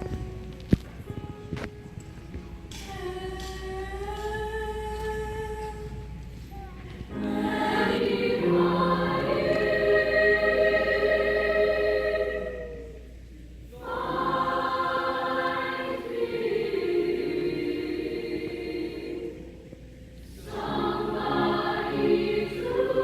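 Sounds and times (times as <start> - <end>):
choir singing held chords: 7.1 - 23.0.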